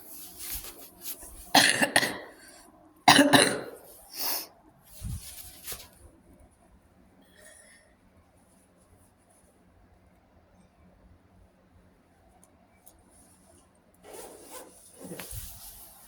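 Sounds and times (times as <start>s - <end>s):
person coughing: 1.5s - 2.5s, 3.1s - 4.5s.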